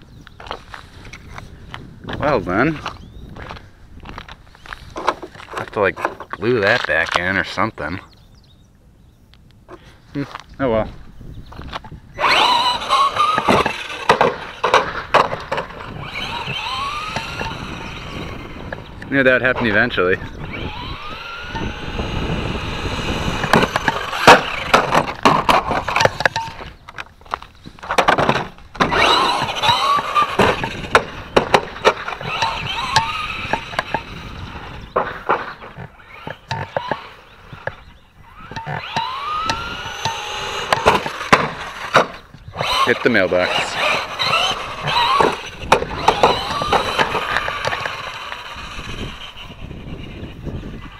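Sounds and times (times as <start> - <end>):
tyres scrabbling on dirt: 0.0 - 8.0, 10.2 - 50.9
toy truck electric motor whining: 12.2 - 19.1, 19.7 - 26.6, 28.8 - 50.9
truck bouncing knocks: 12.4 - 17.8, 38.6 - 42.8, 43.5 - 49.1.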